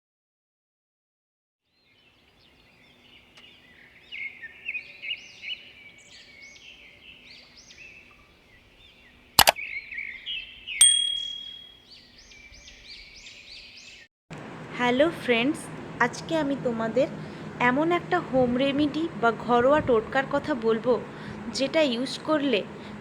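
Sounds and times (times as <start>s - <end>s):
birds chirping and singing: 1.7s - 14.0s
sharp click: 9.4s - 9.6s, 10.8s - 11.7s
ringing ding: 10.8s - 11.8s.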